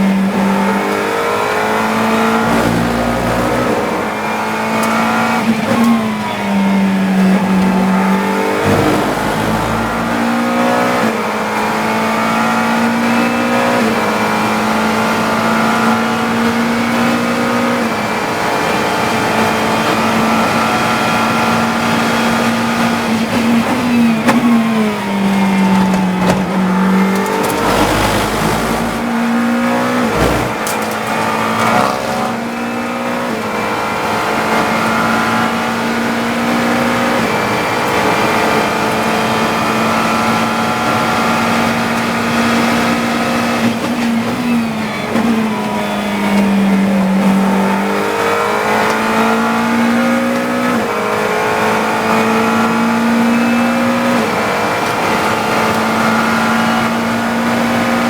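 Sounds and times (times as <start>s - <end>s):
race car engine accelerating: 0.0s - 58.0s
low thumps: 2.4s - 4.0s, 30.0s - 30.8s.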